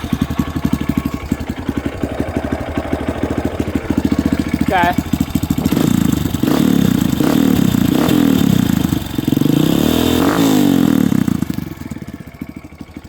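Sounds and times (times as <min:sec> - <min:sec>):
motorcycle engine idling: 0:00.0 - 0:13.0
motorcycle engine revving: 0:00.0 - 0:13.0.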